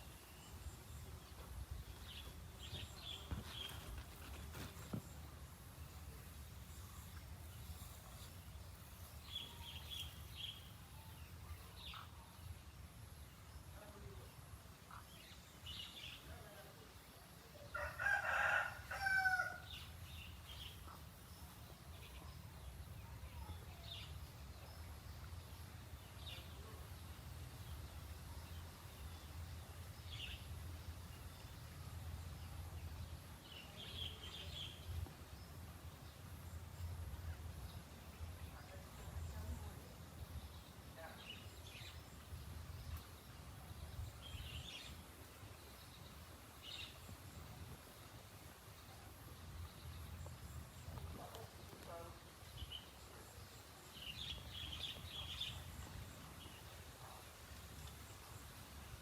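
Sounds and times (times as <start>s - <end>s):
small birds chirping: 0.0s - 18.4s, 19.7s - 59.0s
rooster crowing: 17.7s - 19.7s.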